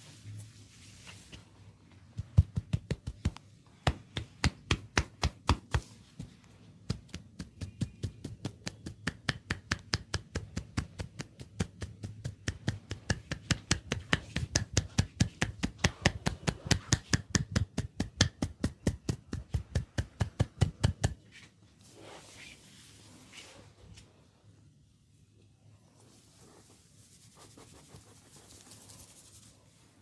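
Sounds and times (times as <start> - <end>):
hands striking a head rapidly: 2.2 - 21.2.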